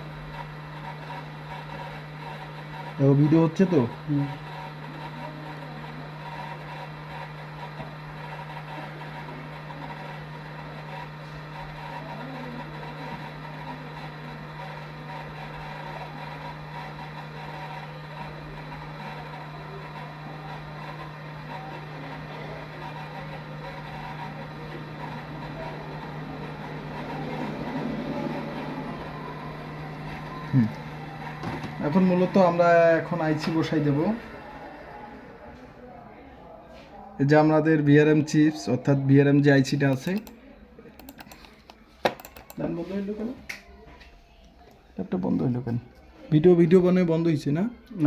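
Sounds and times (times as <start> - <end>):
steady electrical hum: 0.0 - 38.1.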